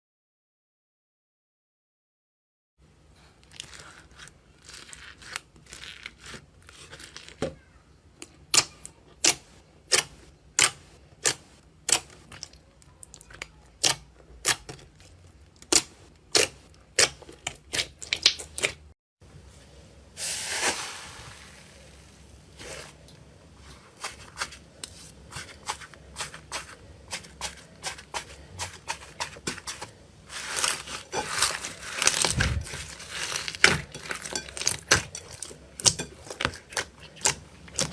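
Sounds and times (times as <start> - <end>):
slime crinkling and crackling: 3.4 - 7.4, 24.0 - 37.9.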